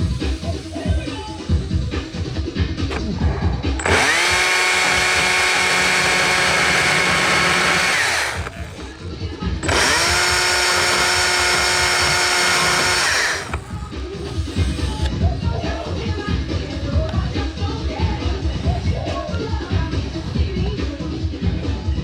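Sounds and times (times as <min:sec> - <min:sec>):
background music: 0:00.0 - 0:22.0
power tool whining: 0:03.7 - 0:09.0, 0:09.6 - 0:15.1.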